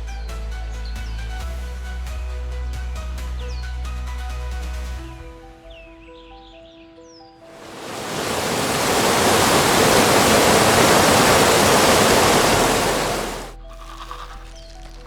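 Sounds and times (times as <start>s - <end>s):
soft background music: 0.0s - 7.5s, 13.5s - 15.0s
rushing water: 7.5s - 15.0s.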